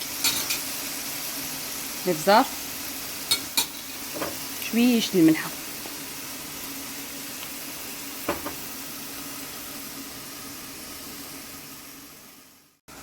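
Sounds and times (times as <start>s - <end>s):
seafood sizzling in a pot: 0.0s - 13.0s
utensil knock: 8.3s - 8.6s.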